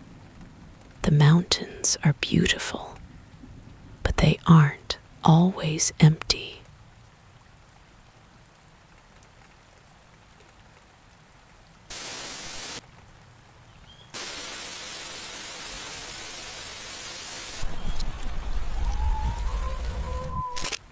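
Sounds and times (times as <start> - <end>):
faint rain-like hiss: 0.0 - 20.9
bursts of static white noise: 11.9 - 13.0, 14.1 - 20.9
low rumble: 17.6 - 20.7.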